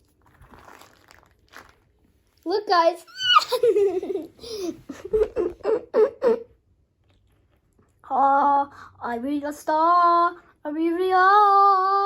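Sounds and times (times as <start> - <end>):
child giggling: 3.1 - 6.6.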